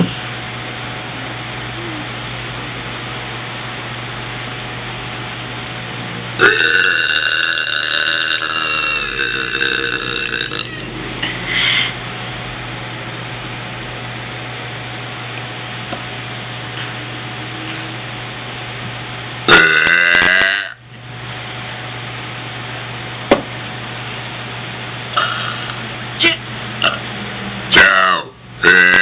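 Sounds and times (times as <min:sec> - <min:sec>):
woman burping: 0:06.4 - 0:10.8, 0:19.5 - 0:20.8, 0:25.2 - 0:27.0, 0:27.8 - 0:29.0.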